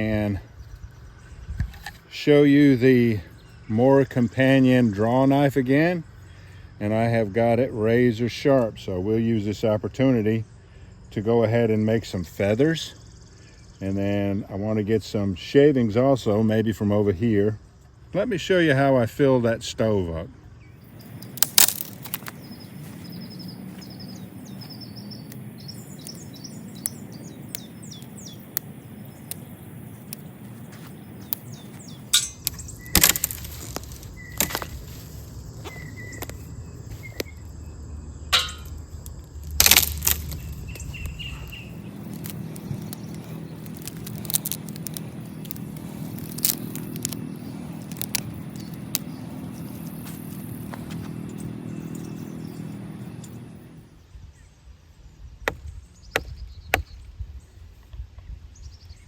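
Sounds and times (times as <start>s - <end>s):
small birds chirping: 0.0s - 59.0s
low steady hum: 20.2s - 54.6s
clicks: 38.3s - 52.1s
sharp knocks: 56.2s - 56.9s.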